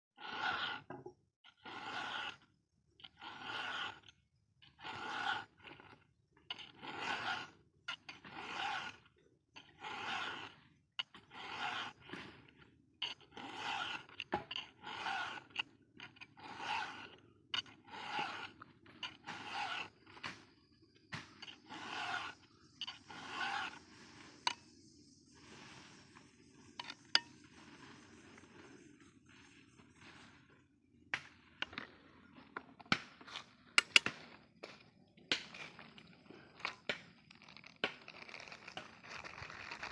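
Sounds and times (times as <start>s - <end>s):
file rasping on chain: 0.2s - 20.4s, 21.1s - 24.6s.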